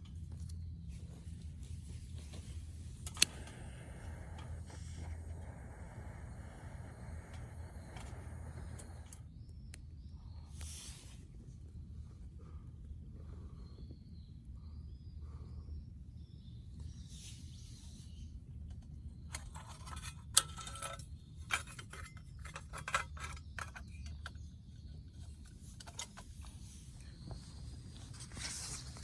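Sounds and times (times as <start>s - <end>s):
low steady rumble: 0.0s - 16.7s.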